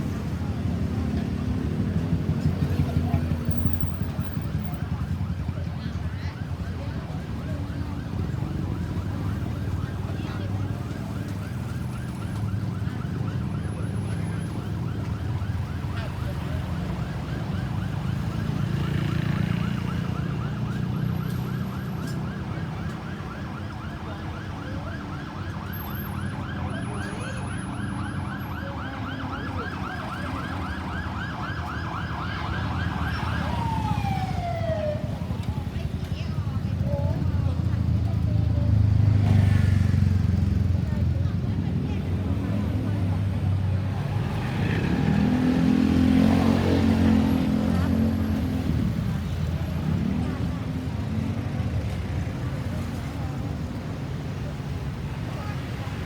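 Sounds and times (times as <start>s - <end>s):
low rumble of road traffic: 0.0s - 56.0s
ambulance siren yelping: 1.9s - 36.0s.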